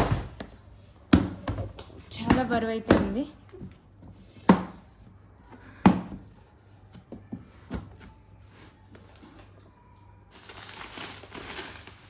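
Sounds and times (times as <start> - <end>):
plastic packaging crinkling: 10.3 - 12.0.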